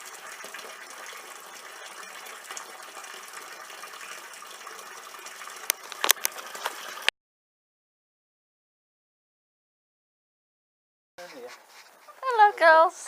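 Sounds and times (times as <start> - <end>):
water gushing into pond: 0.0 - 7.1.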